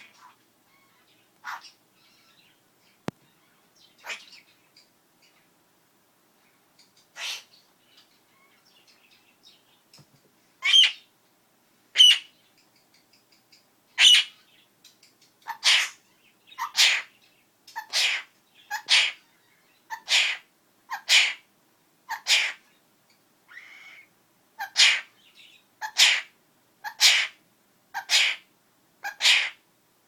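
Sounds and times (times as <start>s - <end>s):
parrot mimicking a sneeze: 21.0s - 21.4s.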